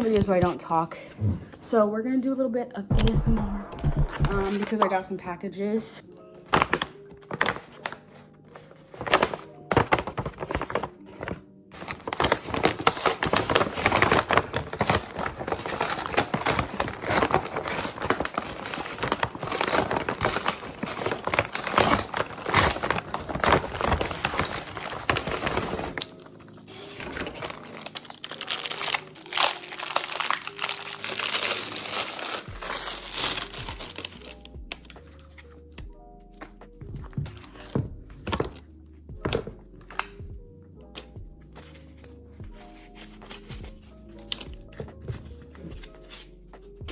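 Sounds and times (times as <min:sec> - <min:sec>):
packaging crinkling and rustling: 0:06.4 - 0:35.9, 0:41.6 - 0:46.9.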